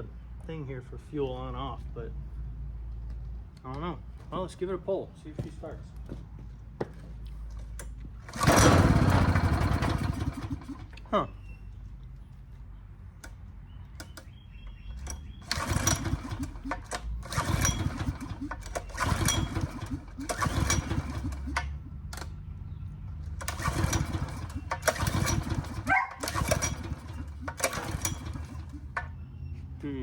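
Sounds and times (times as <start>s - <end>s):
generator recoil pull-start cranking: 7.8s - 11.2s, 14.0s - 22.4s, 23.2s - 29.1s.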